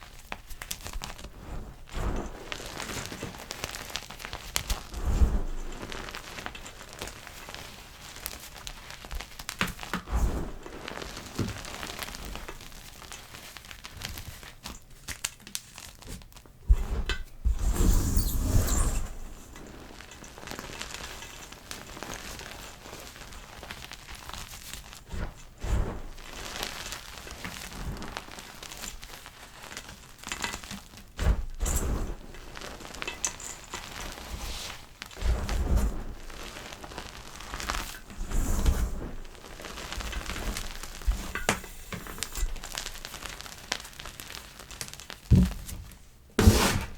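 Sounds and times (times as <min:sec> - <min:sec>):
chalk crushed by hand: 0:46.4 - 0:46.9.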